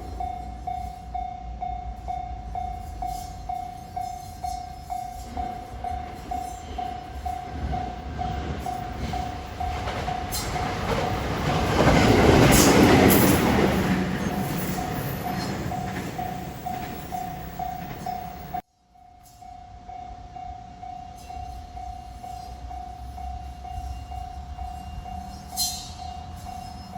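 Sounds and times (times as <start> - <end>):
electric train passing: 0.0 - 26.9
level-crossing bell dinging: 12.4 - 18.6.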